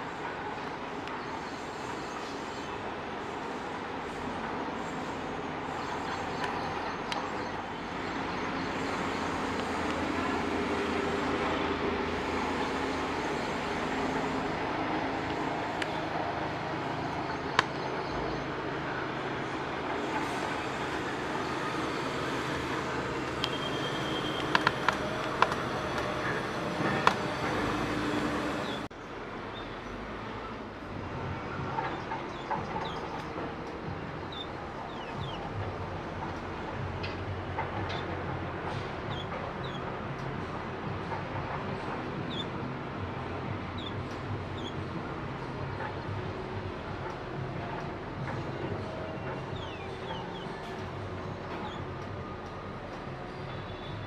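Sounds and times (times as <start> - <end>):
traffic hum: 0.0 - 54.0
sharp clicks: 23.2 - 26.1.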